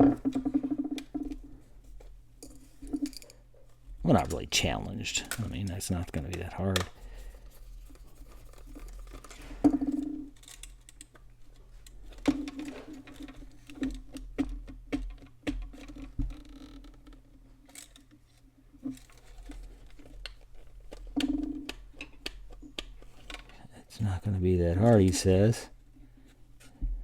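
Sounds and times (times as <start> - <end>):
plastic clock being taken apart: 4.2 - 23.6.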